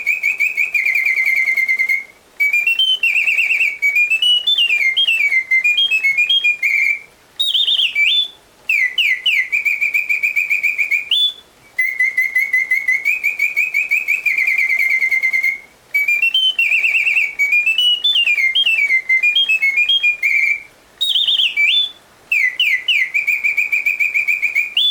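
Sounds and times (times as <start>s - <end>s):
mechanical birdsong whistle: 0.0s - 24.9s.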